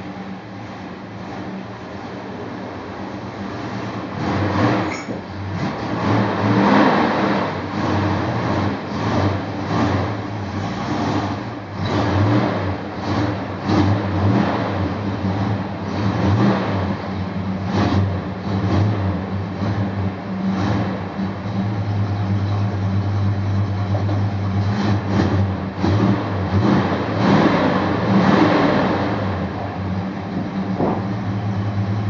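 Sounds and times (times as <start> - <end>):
car engine revving: 0.0 - 32.0.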